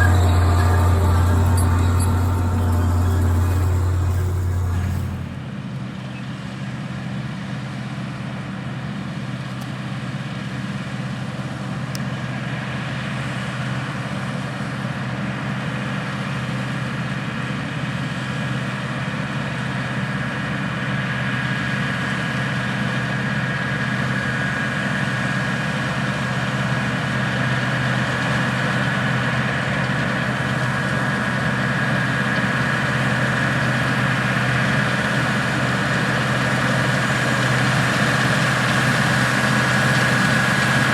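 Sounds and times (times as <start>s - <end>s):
high machine whine: 0.0s - 5.7s, 20.8s - 40.9s
diesel machinery engine running: 0.0s - 40.9s.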